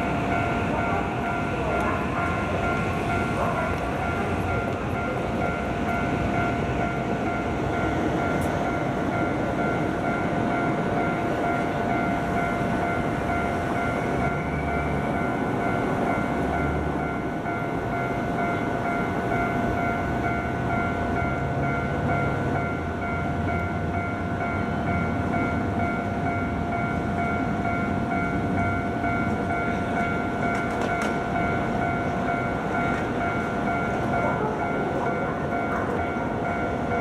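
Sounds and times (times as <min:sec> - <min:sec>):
level crossing warning bell: 0:00.0 - 0:37.0
train rumbling: 0:00.0 - 0:37.0.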